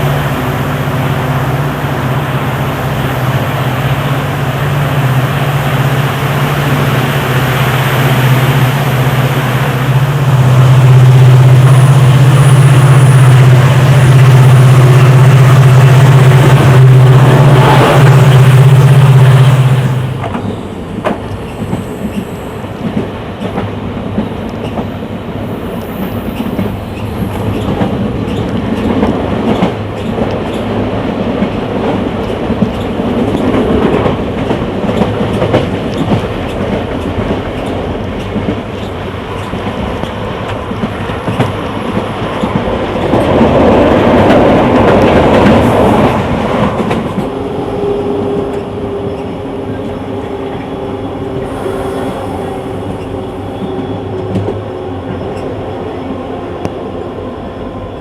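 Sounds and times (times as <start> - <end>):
train rumble: 0.0 - 58.0
train wheels clicking over rail joints: 25.8 - 47.4.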